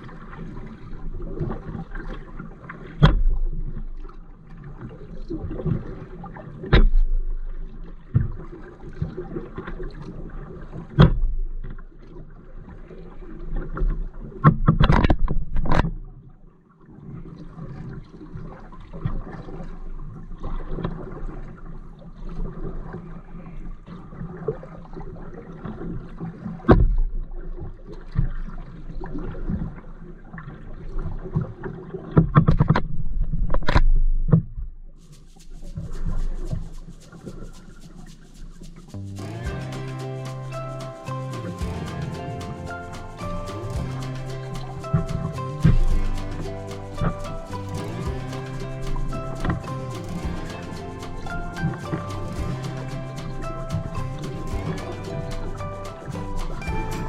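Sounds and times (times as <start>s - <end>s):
paddle splashing through water: 0.0s - 15.9s, 35.1s - 57.0s.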